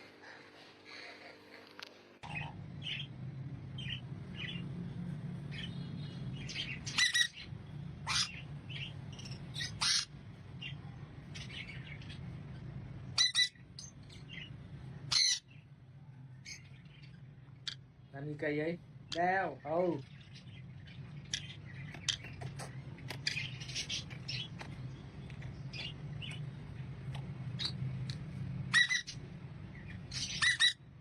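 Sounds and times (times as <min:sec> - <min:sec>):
steady low hum: 0:00.0 - 0:31.0
parrot chirping and squawking: 0:02.2 - 0:03.2, 0:03.8 - 0:04.6, 0:05.5 - 0:15.6, 0:16.4 - 0:18.0, 0:20.1 - 0:24.6, 0:27.5 - 0:31.0.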